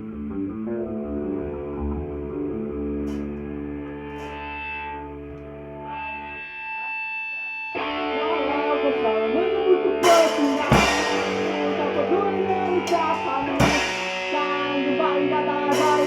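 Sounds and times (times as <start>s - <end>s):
distorted electric guitar chords: 0.0s - 16.0s
cymbal crash: 10.0s - 16.0s.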